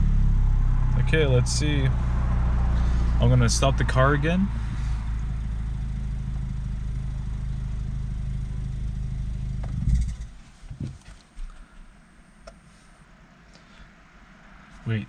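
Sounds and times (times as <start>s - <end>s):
engine shuddering to a stop: 0.0s - 11.9s
car engine idling: 0.0s - 15.0s.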